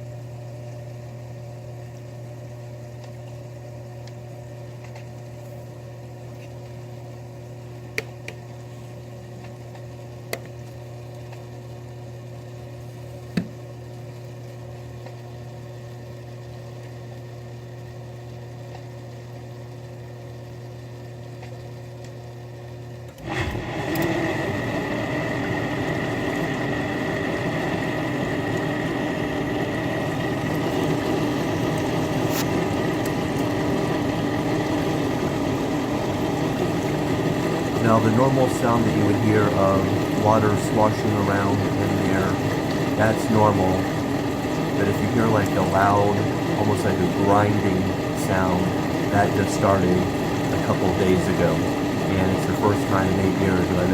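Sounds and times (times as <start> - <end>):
dishwasher humming: 22.4 - 53.9.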